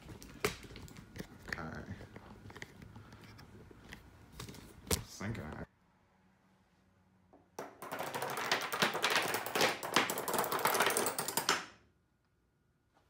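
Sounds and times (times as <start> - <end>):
padlocks toppling on tabletop: 7.8 - 11.7.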